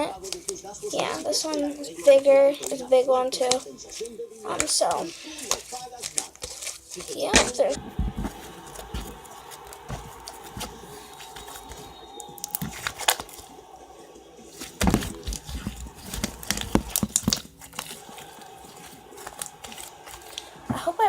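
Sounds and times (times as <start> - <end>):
slime crackling and popping: 8.9 - 13.4, 14.7 - 20.6.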